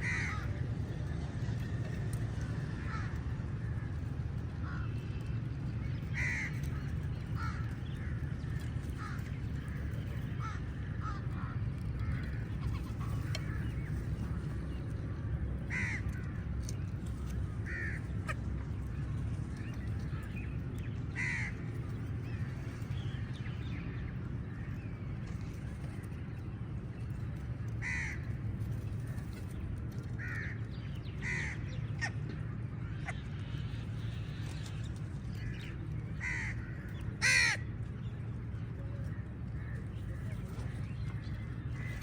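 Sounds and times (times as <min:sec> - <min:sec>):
crows cawing: 0:00.0 - 0:00.6, 0:02.8 - 0:03.9, 0:04.6 - 0:04.9, 0:06.1 - 0:09.7, 0:10.4 - 0:13.9, 0:15.7 - 0:16.4, 0:17.6 - 0:18.4, 0:21.1 - 0:21.6, 0:27.8 - 0:28.3, 0:30.2 - 0:30.6, 0:31.2 - 0:32.2, 0:35.4 - 0:37.7
steady low rumble: 0:00.0 - 0:42.0.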